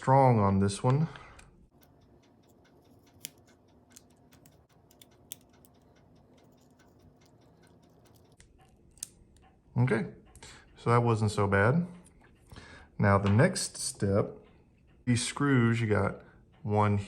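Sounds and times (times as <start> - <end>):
small device clicks and ticks: 1.7 - 9.6.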